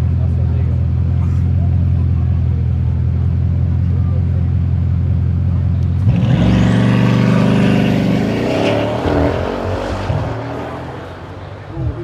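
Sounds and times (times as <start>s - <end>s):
car engine accelerating hard: 5.5s - 12.0s.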